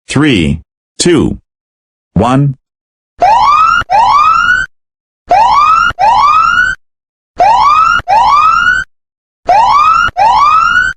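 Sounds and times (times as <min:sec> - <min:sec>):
electronic siren whooping: 0:03.2 - 0:04.7, 0:05.3 - 0:06.8, 0:07.4 - 0:08.9, 0:09.5 - 0:10.9.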